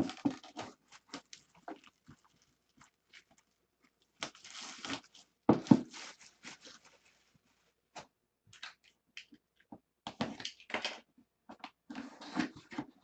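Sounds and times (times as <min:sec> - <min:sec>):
packaging crinkling and rustling: 0:00.0 - 0:07.8
packaging ripping: 0:04.2 - 0:05.2.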